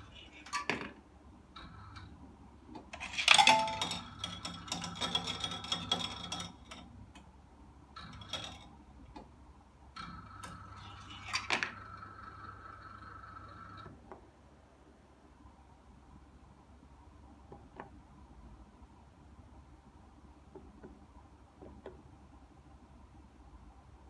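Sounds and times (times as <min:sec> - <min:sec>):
machine hum: 0:00.0 - 0:23.4
coins clinking through counting machine: 0:03.0 - 0:06.8.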